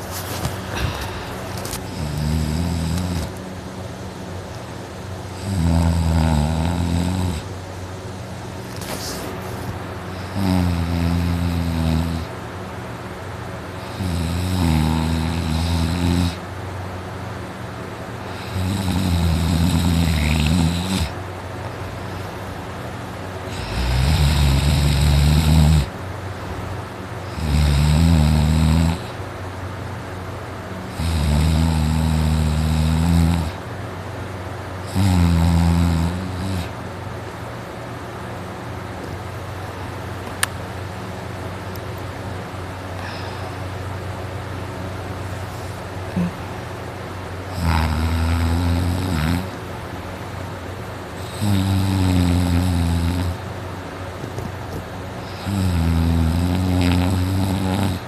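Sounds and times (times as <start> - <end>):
steady background noise: 0.0 - 58.0
man snoring: 0.6 - 3.4, 5.4 - 7.5, 10.1 - 12.3, 13.8 - 16.4, 18.2 - 21.2, 23.5 - 25.9, 27.2 - 29.2, 30.9 - 33.6, 34.8 - 36.7, 43.0 - 43.6, 46.1 - 46.4, 47.5 - 49.6, 51.2 - 53.4, 55.2 - 58.0.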